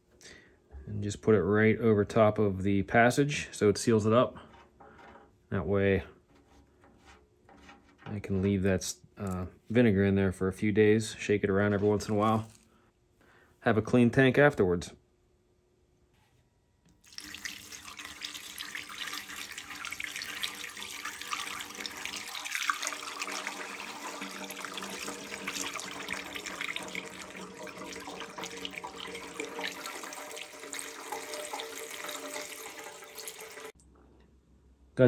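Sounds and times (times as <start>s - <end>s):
liquid pouring into metal tank: 17.0s - 33.8s.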